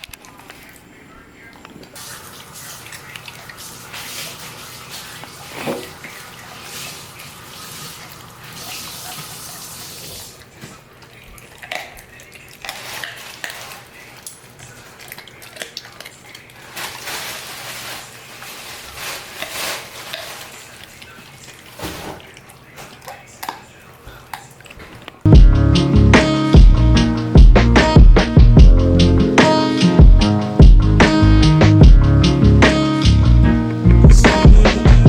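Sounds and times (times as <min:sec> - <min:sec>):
dog chewing bone wet crunching: 0:10.3 - 0:17.1, 0:19.2 - 0:25.3.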